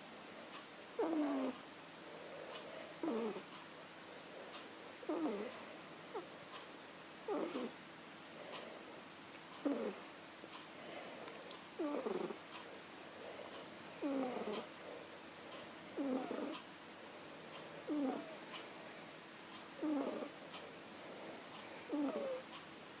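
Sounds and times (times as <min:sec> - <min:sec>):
kitten snoring: 0:01.0 - 0:01.6, 0:03.0 - 0:03.6, 0:05.0 - 0:06.3, 0:07.2 - 0:07.8, 0:09.6 - 0:10.2, 0:11.8 - 0:12.5, 0:14.0 - 0:14.8, 0:16.0 - 0:16.6, 0:17.8 - 0:18.6, 0:19.8 - 0:20.6, 0:21.7 - 0:22.6.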